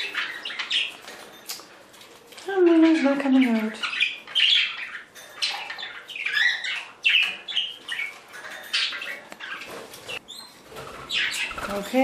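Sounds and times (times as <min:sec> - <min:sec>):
budgerigars chirping: 0:00.0 - 0:01.7, 0:02.7 - 0:12.0.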